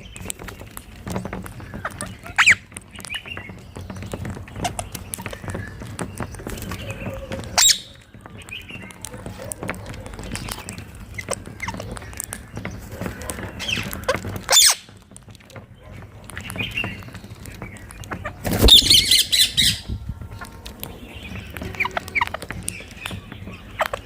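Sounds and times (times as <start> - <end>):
parakeets screeching: 0.0 - 24.0
parakeet chirps and squawks: 1.7 - 3.5, 8.6 - 15.0, 21.2 - 24.0.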